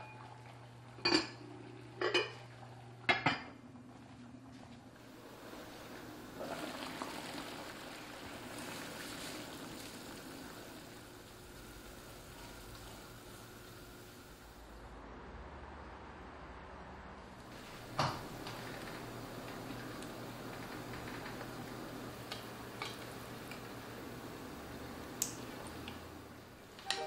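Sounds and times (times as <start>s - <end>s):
dishes clinking: 1.0s - 1.4s, 2.0s - 2.4s.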